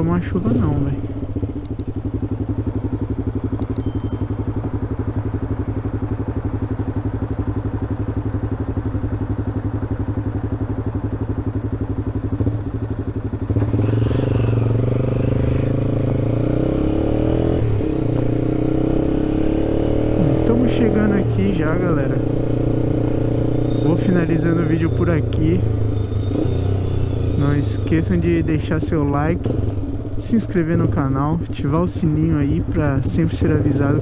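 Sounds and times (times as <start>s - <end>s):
motorcycle engine running: 1.0s - 23.8s, 29.4s - 32.8s.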